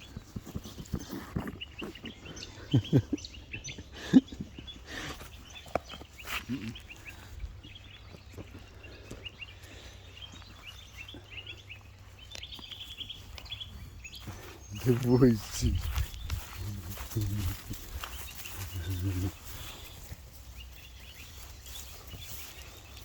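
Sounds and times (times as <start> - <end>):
small birds chirping: 0.0 - 23.0
rustling: 12.8 - 23.0.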